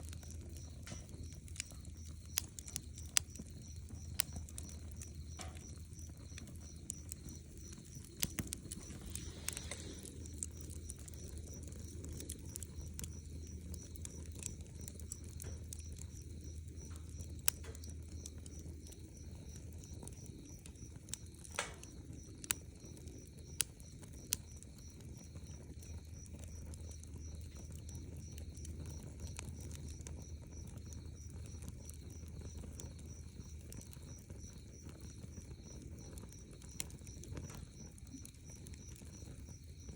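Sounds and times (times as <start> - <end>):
low steady rumble: 0.0 - 23.6
campfire crackling: 0.0 - 39.9.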